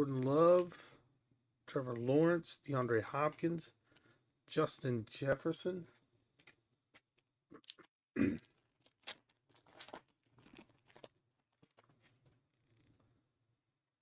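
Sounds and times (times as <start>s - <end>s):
cards and wrapper rustling: 8.6s - 12.0s.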